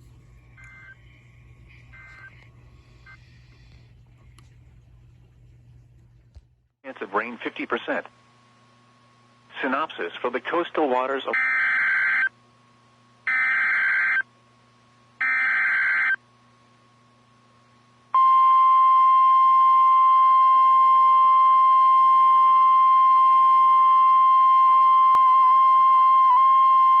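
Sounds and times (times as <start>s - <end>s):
steady warning alarm tone: 0.1s - 1.1s, 1.8s - 3.3s, 11.3s - 12.3s, 13.3s - 14.2s, 15.2s - 16.2s.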